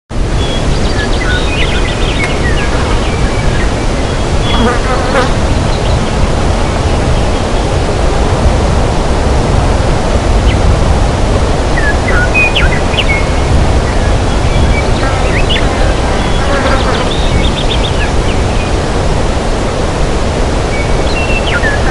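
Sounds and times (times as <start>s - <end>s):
steady hiss and rumble: 0.1s - 21.9s
birds chirping: 0.2s - 7.9s, 11.7s - 19.4s, 20.6s - 21.9s.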